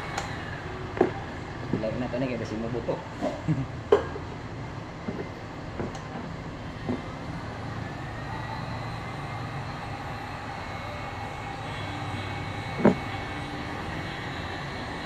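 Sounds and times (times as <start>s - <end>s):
heat gun running: 7.4s - 15.0s.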